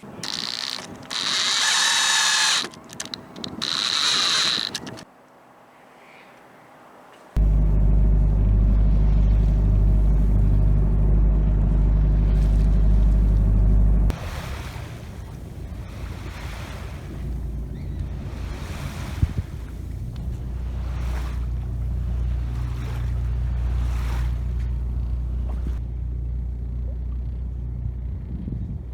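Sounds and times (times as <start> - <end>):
loud low drone: 7.4 - 14.2
wind and water rushing: 14.1 - 24.9.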